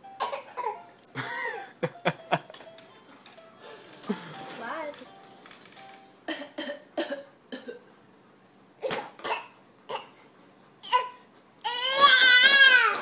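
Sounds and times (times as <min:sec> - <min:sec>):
infant fake coughing: 0:00.2 - 0:01.7, 0:08.8 - 0:11.2.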